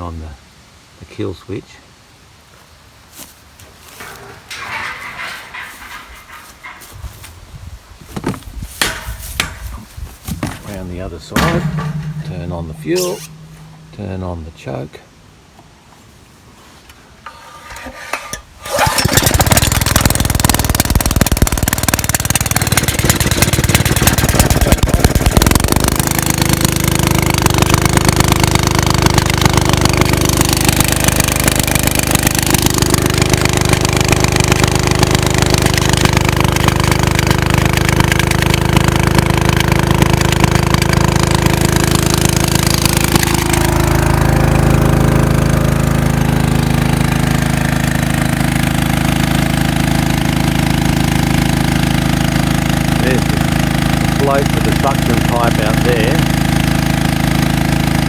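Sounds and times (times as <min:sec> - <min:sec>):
engine pull-start: 0:04.0 - 0:06.9, 0:10.6 - 0:14.1, 0:17.2 - 0:58.0
water pump engine running: 0:04.1 - 0:06.8, 0:11.3 - 0:14.2, 0:17.3 - 0:58.0.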